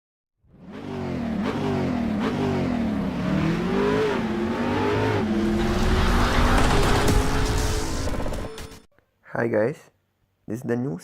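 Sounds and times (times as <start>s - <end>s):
car engine revving: 0.5s - 8.8s.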